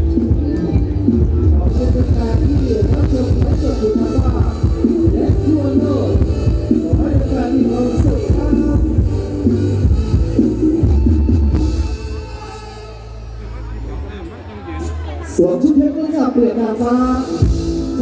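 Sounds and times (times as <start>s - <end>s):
heavy bass drum beat: 0.0s - 13.2s, 17.2s - 18.0s
band playing stage music: 0.0s - 18.0s.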